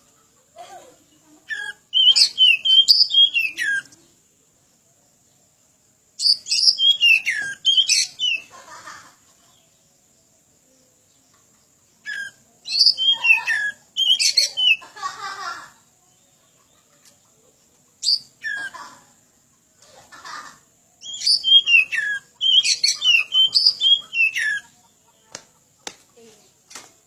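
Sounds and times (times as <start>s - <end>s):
bird singing whistled notes: 1.5s - 4.0s, 6.2s - 8.5s, 12.0s - 14.8s, 18.0s - 18.6s, 21.0s - 24.6s.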